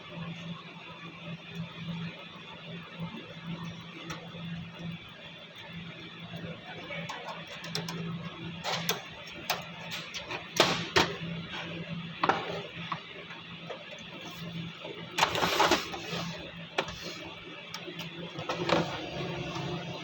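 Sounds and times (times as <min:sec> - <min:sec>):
printer humming: 0:00.0 - 0:20.0
printer clicks: 0:08.6 - 0:11.2.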